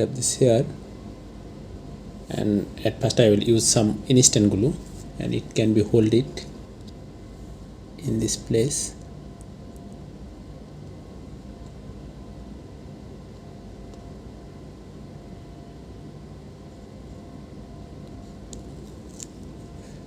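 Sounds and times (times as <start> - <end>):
low background hum and hiss: 0.0 - 20.0.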